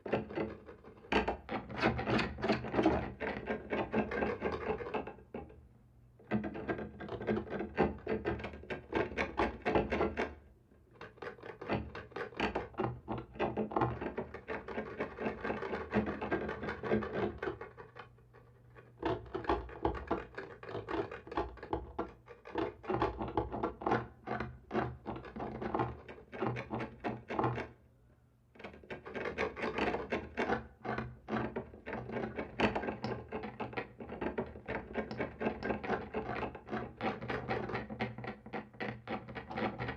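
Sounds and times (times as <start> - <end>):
scratching and scraping on a wall: 0.0 - 5.6, 6.2 - 27.8, 28.5 - 39.9.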